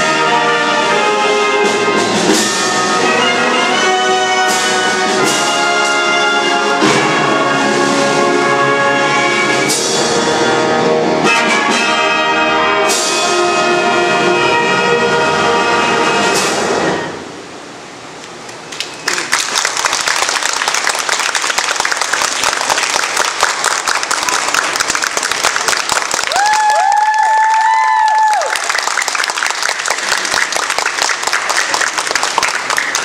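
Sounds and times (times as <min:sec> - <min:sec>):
concert wind band playing: 0:00.0 - 0:17.8
audience applause: 0:18.7 - 0:33.0.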